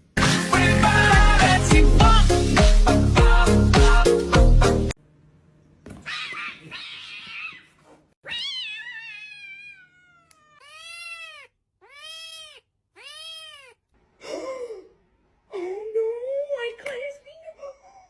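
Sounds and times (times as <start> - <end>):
cat meowing: 6.0 - 13.9.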